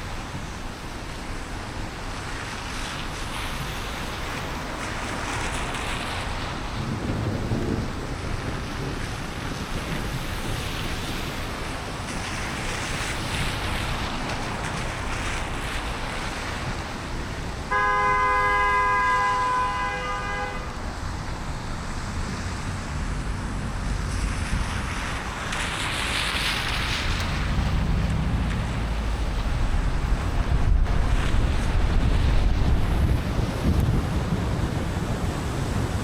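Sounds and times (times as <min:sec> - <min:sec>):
rain and tyres on wet road: 0:00.0 - 0:36.0
car horn: 0:17.7 - 0:20.9.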